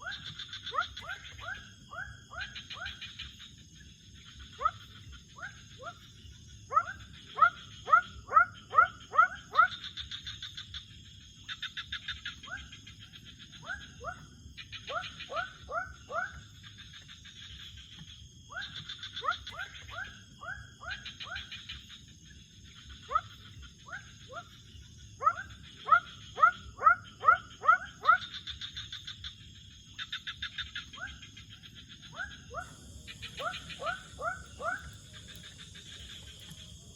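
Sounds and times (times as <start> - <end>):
frogs calling: 0.0 - 36.9
high-pitched insect drone: 28.3 - 36.9
pulsing trills: 32.0 - 36.9.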